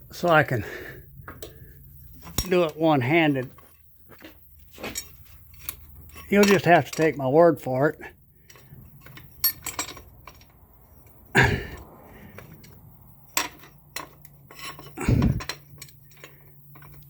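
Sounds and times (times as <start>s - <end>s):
metal bracket clinking: 2.2s - 7.4s, 8.4s - 17.0s.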